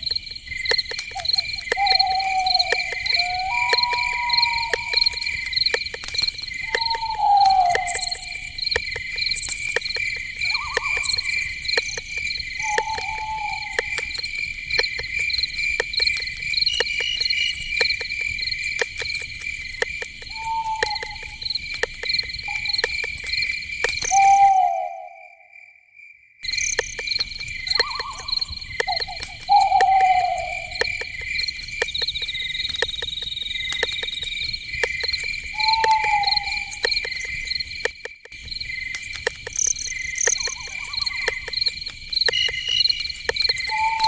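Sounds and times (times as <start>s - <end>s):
crickets chirping: 0.0s - 44.0s
night animal falling calls: 1.1s - 5.3s, 6.6s - 8.4s, 12.6s - 14.1s, 20.3s - 21.4s, 27.7s - 31.2s, 35.5s - 37.0s.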